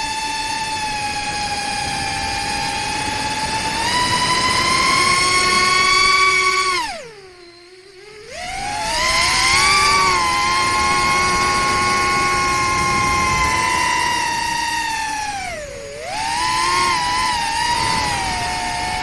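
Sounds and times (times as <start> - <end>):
drone motors whining: 0.0 - 19.0.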